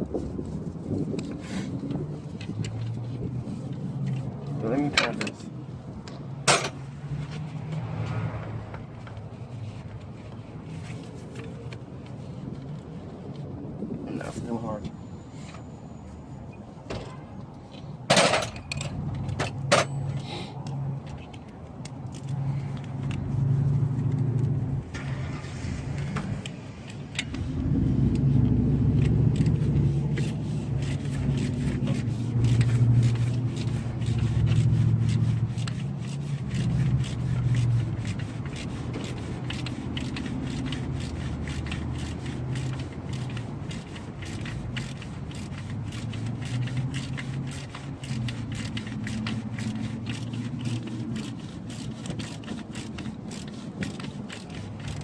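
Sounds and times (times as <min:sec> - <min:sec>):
ratchet wrench clicking: 0:28.1 - 0:55.0.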